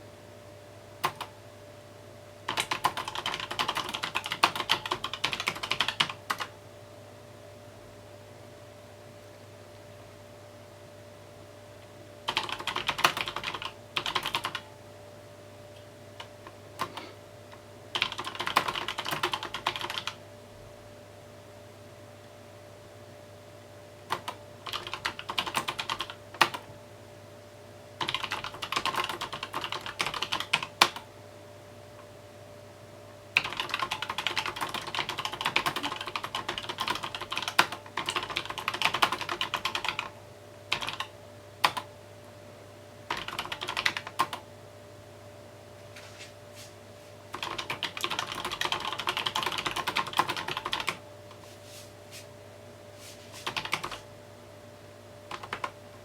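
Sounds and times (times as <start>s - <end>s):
faint steady hum: 0.0s - 56.0s
typing on mechanical keyboard: 2.5s - 6.5s, 12.3s - 14.7s, 18.0s - 20.2s, 24.1s - 26.7s, 28.0s - 31.1s, 33.4s - 41.9s, 43.1s - 44.4s, 47.3s - 51.0s, 53.4s - 54.0s, 55.3s - 55.8s.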